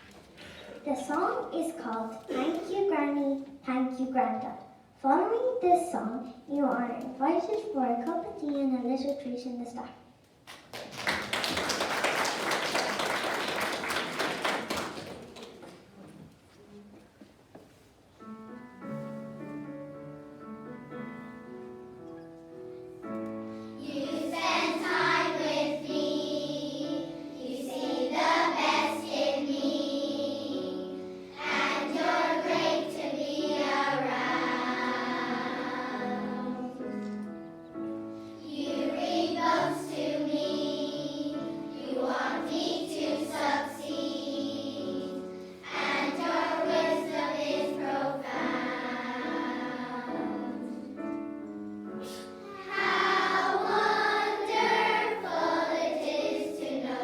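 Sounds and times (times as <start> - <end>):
piano accompaniment: 18.0 - 57.0
girls choir singing in unison: 23.6 - 37.1, 38.4 - 51.4, 52.0 - 57.0.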